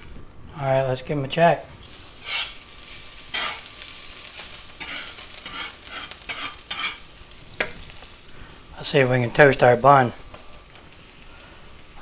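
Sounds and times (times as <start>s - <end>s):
vegetables sizzling on a griddle: 1.3s - 12.0s
scraping strokes across pan: 1.6s - 12.0s.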